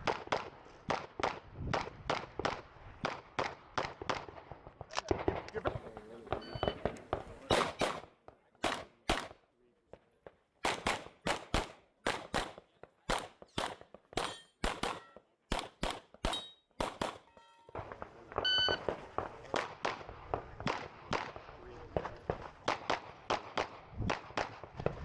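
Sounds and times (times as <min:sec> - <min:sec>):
pistol shots: 0:05.1 - 0:09.5, 0:10.6 - 0:24.9.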